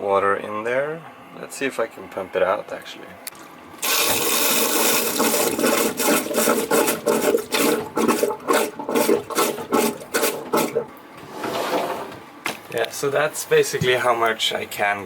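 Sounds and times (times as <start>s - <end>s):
bilge pump gurgling rush: 3.8s - 11.0s.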